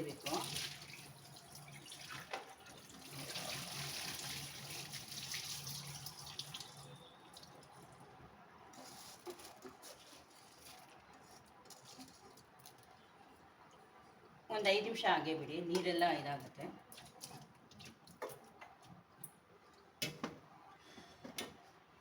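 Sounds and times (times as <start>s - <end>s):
water pouring and splashing: 0.0s - 8.0s
water trickling and dripping: 0.0s - 8.0s.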